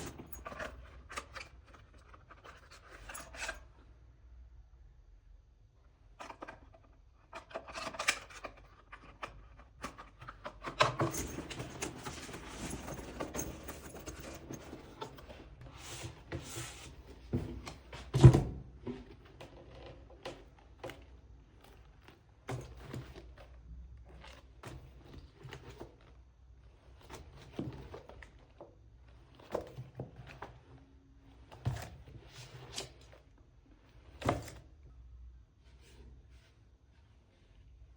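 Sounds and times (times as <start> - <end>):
items knocking and thunking: 0.0 - 1.4, 10.5 - 21.1.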